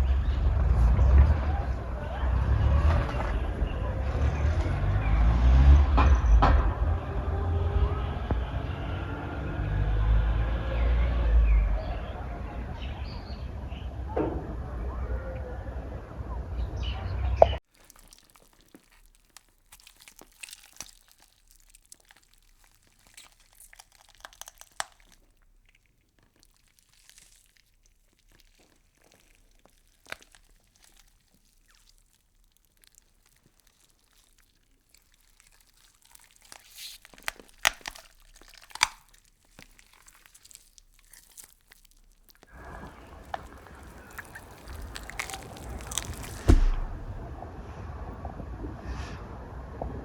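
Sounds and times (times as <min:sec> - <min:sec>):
insects chewing leaves: 0:17.6 - 0:47.4.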